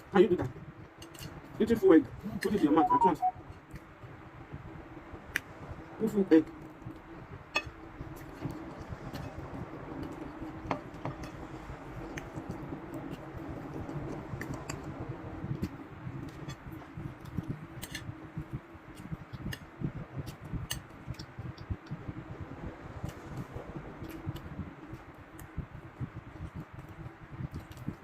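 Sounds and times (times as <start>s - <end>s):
low background rumble: 0.0s - 28.0s
steady low hum: 0.0s - 28.0s.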